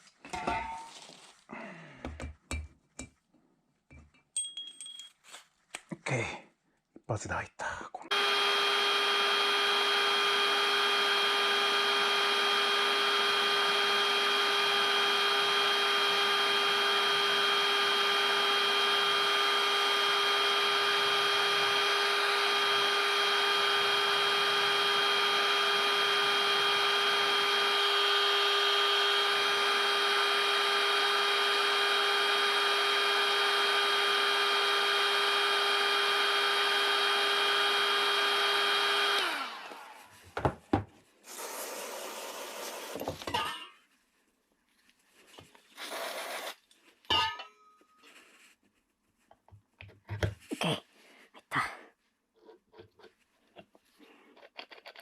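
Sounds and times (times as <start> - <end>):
heat gun blowing: 8.1 - 40.2, 41.2 - 43.4, 45.8 - 46.6.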